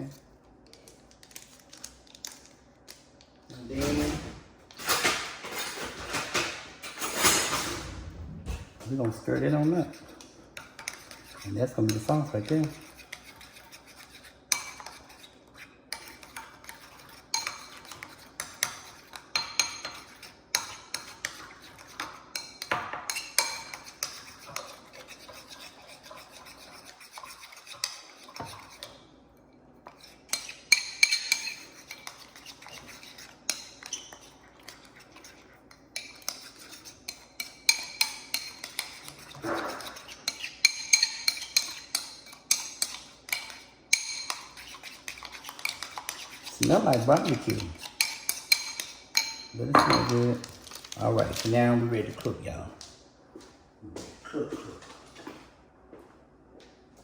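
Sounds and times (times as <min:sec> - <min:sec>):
utensil clinking in a bowl: 0:15.9 - 0:29.0, 0:29.9 - 0:52.4.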